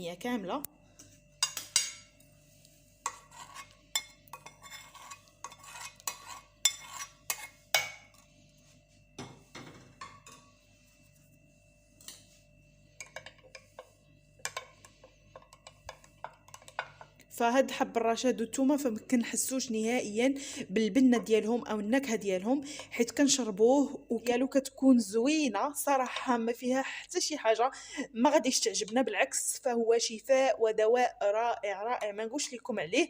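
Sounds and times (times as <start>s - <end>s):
faint steady hum: 0.0s - 33.0s
metal spoon clinking against pot: 1.4s - 2.1s, 3.1s - 8.0s, 15.4s - 16.9s.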